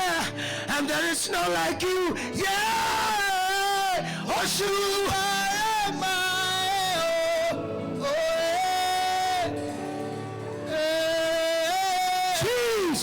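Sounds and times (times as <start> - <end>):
person singing long notes: 0.0 - 13.0
soft instrumental accompaniment: 0.0 - 13.0.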